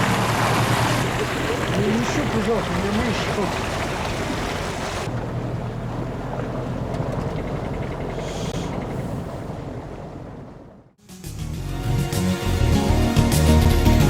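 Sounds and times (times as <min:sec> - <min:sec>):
water around a boat: 0:00.0 - 0:14.0
music: 0:11.0 - 0:14.0.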